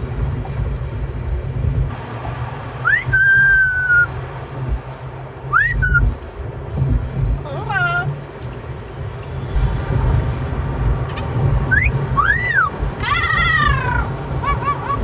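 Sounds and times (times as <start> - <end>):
low rumble of moving car: 0.0 - 15.0
parrot whistling: 2.8 - 4.1, 5.5 - 6.0, 7.5 - 8.1, 11.1 - 15.0.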